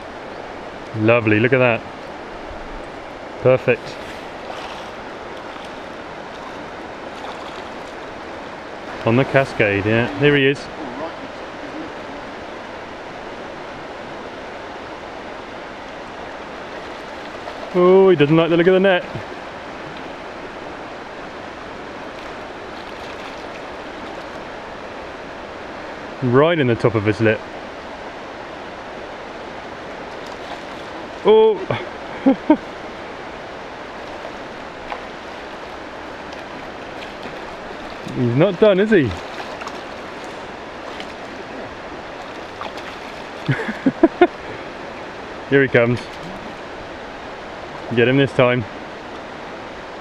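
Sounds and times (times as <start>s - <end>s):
river water rushing: 0.0s - 50.0s.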